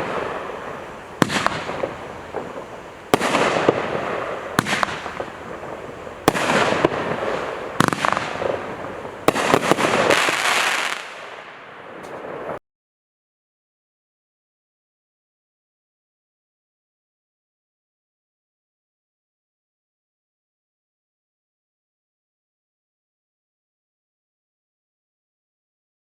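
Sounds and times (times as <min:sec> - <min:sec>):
fireworks cake firing shots: 0:00.0 - 0:11.4.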